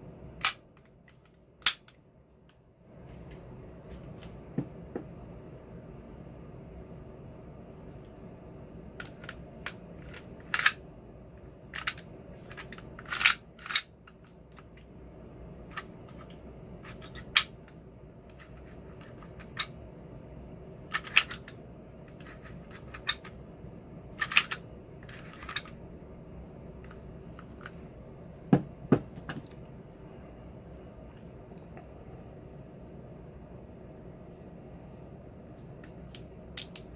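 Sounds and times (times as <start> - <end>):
heavy knocks: 28.5 - 29.4.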